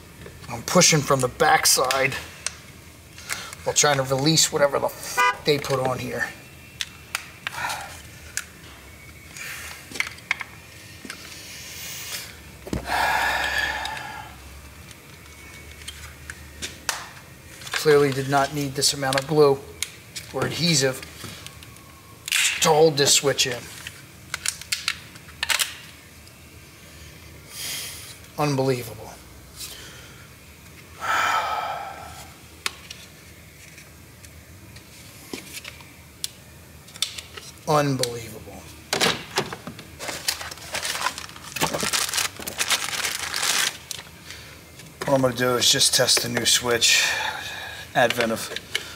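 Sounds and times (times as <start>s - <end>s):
man sighing: 12.8s - 14.4s, 31.0s - 32.4s.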